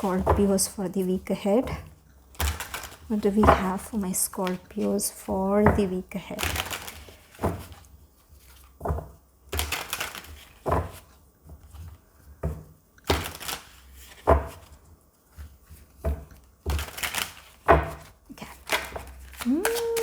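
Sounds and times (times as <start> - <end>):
cards being shuffled: 2.3 - 5.3, 6.3 - 7.8, 8.4 - 11.0, 13.1 - 14.7, 16.7 - 20.0.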